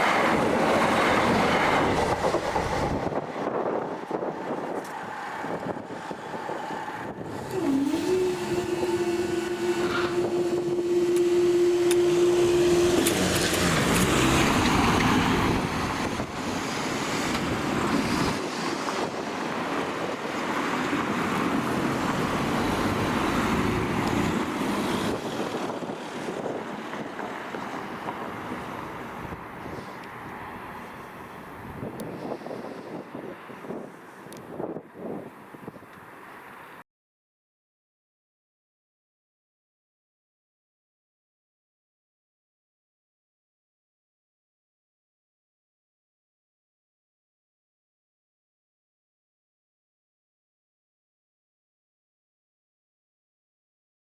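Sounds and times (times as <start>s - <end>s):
train rumble: 0.0s - 31.2s
train engine: 0.0s - 33.8s.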